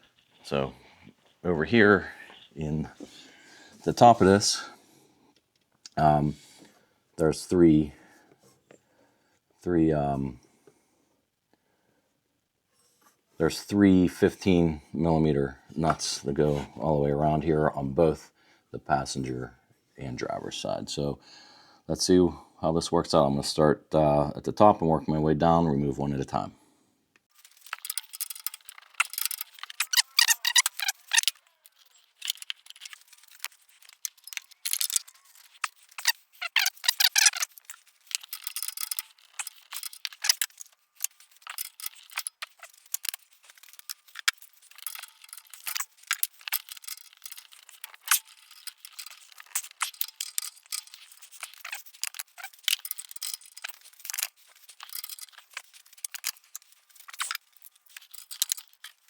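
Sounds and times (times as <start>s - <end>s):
metallic clinks of tool and nuts: 27.3s - 59.0s
ratchet wrench clicking: 27.5s - 59.0s.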